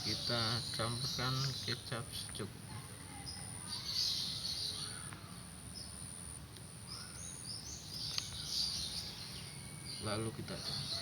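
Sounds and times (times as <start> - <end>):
birds chirping and twittering: 0.0 - 11.0.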